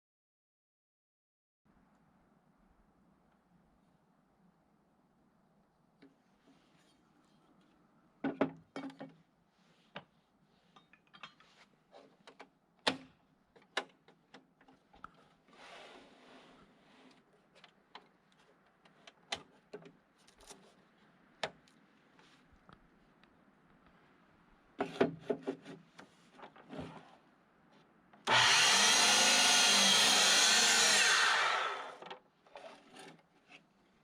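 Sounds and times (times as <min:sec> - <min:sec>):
soft scrape: 0:06.4 - 0:07.6, 0:09.5 - 0:10.8, 0:15.5 - 0:17.3.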